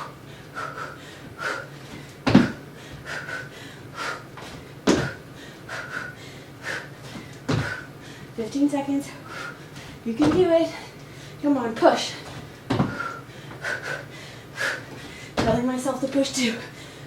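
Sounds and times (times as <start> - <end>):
woman breathing hard: 0.0 - 8.4, 9.1 - 10.0, 12.5 - 15.4, 16.5 - 17.0
feet landing on floor: 1.9 - 3.0, 4.4 - 5.2, 7.1 - 7.8, 10.2 - 10.6, 12.2 - 13.0, 15.4 - 15.7.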